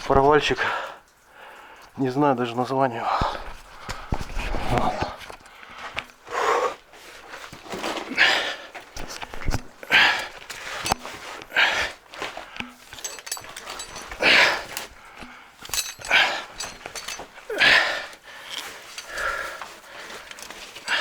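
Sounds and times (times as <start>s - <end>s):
person breathing heavily: 9.8s - 21.0s.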